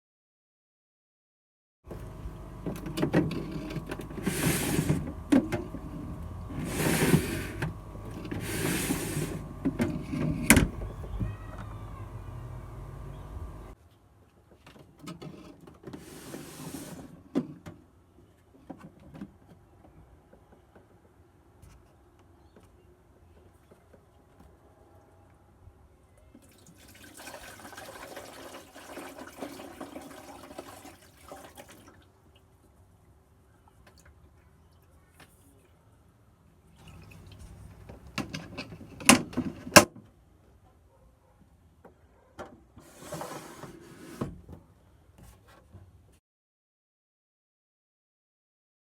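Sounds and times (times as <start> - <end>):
wooden slide scraping on runners: 4.1 - 5.0, 6.5 - 9.4, 15.9 - 17.2, 42.8 - 44.4
tap water running into container: 26.4 - 32.1.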